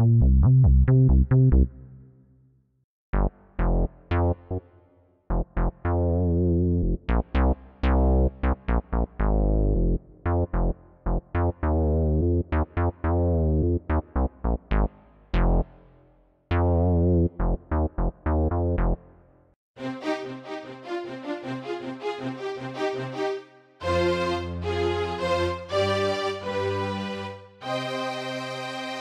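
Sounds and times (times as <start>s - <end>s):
synth keyboard notes and chords: 19.8s - 29.0s.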